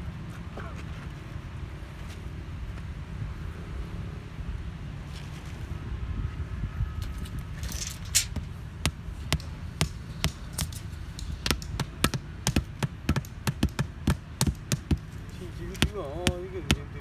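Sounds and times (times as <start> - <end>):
tools knocking on paving stone: 8.4 - 16.9.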